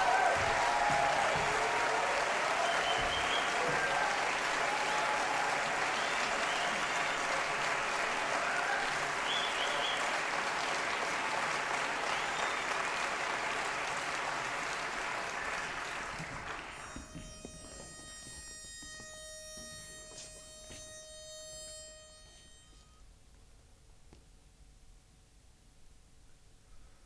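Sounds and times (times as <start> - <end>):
audience applauding: 0.0 - 17.5.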